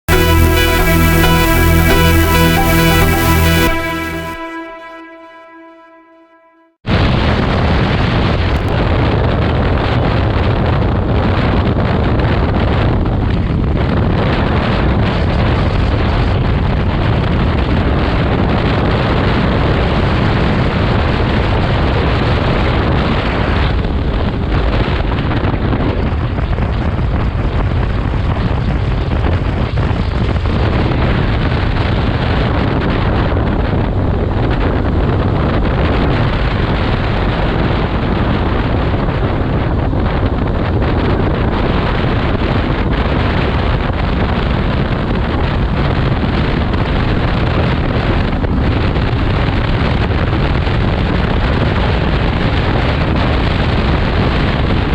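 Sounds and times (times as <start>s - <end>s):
wind noise on microphone: 6.9s - 54.9s.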